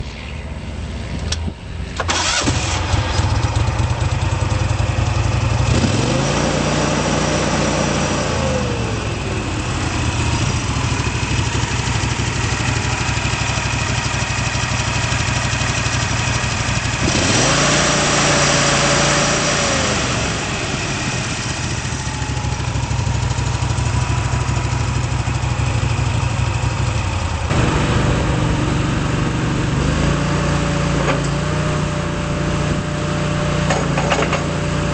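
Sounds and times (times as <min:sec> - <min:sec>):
engine running and revving: 0:00.9 - 0:34.9
engine cranking and starting: 0:01.9 - 0:03.9.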